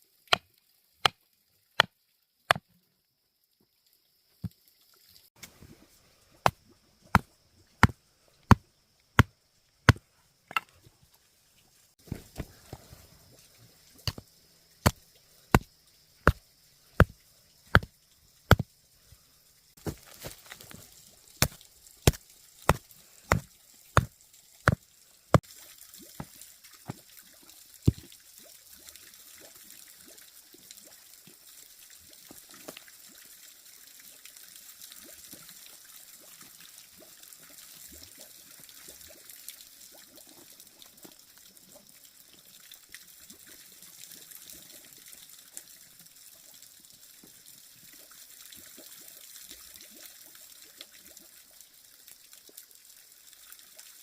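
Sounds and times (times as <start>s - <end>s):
water trickling: 3.1s - 54.0s
sharp chopping strikes: 14.8s - 15.0s, 21.4s - 24.1s.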